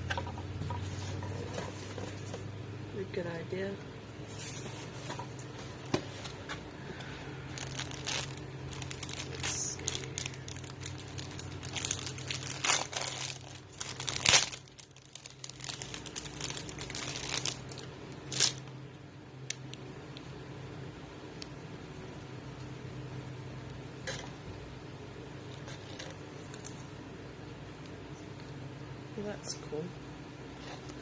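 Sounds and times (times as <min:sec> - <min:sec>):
packaging crinkling and rustling: 0:07.5 - 0:18.7
packaging tearing: 0:07.6 - 0:18.6.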